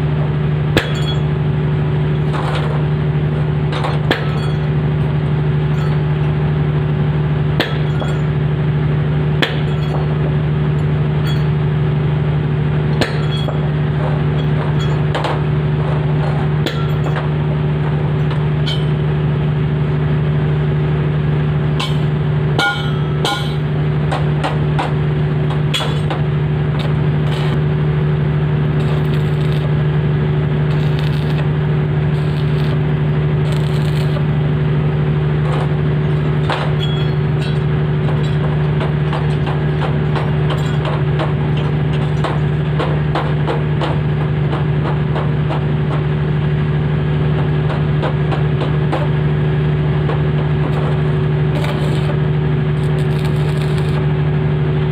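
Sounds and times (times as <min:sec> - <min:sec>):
low machine hum: 0:00.0 - 0:54.9
welding arc crackling: 0:23.4 - 0:54.3.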